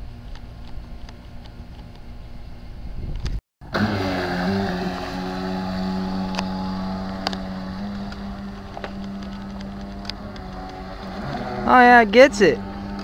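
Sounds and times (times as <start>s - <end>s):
toy boat electric motor whine: 3.9s - 11.8s.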